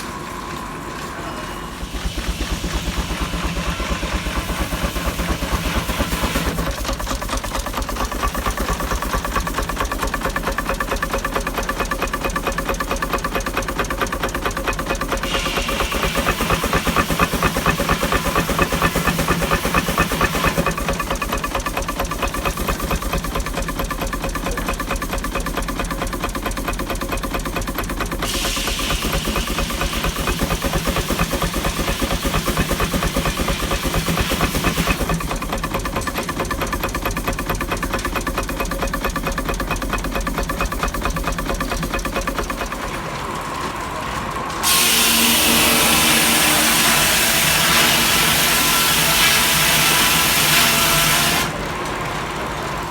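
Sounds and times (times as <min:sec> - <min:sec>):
loud noisy sound: 0:00.0 - 0:07.3
steam hissing: 0:00.0 - 0:43.4, 0:44.0 - 0:52.9
steam engine exhaust beating: 0:00.0 - 0:52.9.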